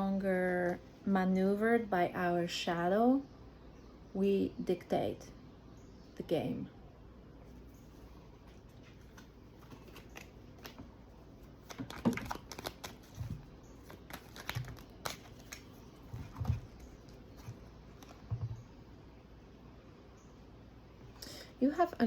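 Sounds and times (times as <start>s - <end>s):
cards clicking and rustling: 8.8s - 11.0s, 11.6s - 18.4s.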